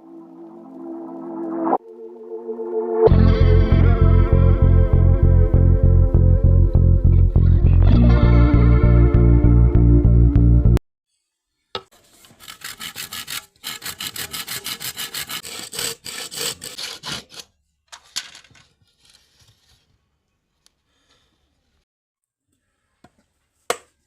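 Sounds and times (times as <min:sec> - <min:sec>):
saw cutting through bamboo: 0:12.0 - 0:17.5.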